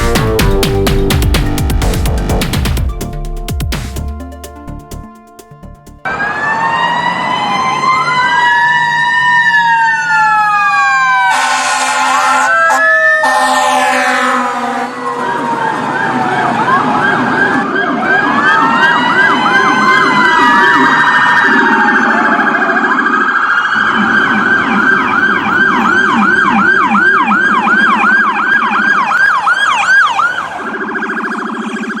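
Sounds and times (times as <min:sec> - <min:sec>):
electronic sirens wailing and yelping: 0:06.0 - 0:32.0
low rapidly pulsing tone: 0:23.8 - 0:28.2.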